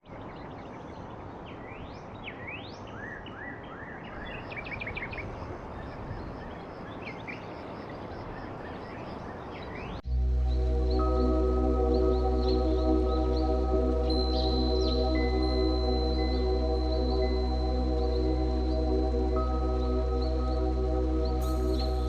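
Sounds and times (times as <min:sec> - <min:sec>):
birds chirping and trilling: 0:00.1 - 0:22.0
music: 0:10.1 - 0:22.0
steady even hiss: 0:10.1 - 0:22.0.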